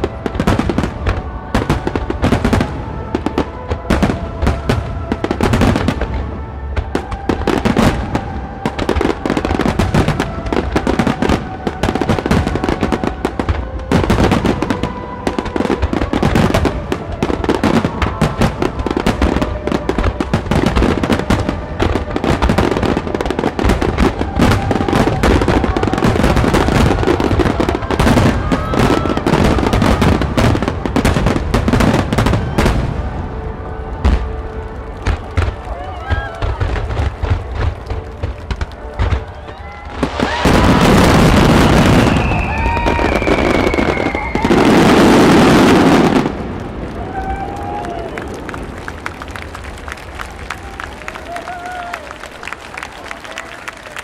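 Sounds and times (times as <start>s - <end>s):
fireworks bursting: 0.0s - 54.0s.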